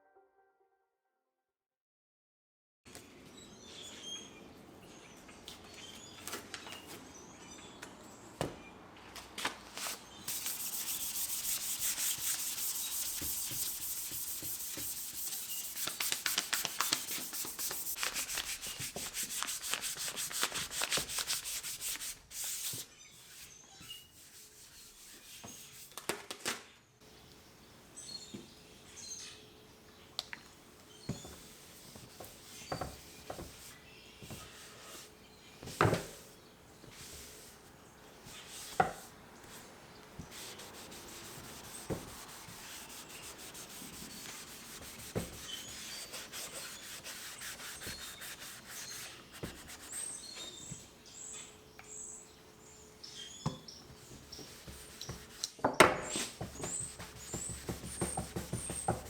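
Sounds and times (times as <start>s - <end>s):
sanding wood board: 10.3s - 25.8s, 40.2s - 50.3s, 56.2s - 59.0s
birds chirping faintly: 27.0s - 59.0s.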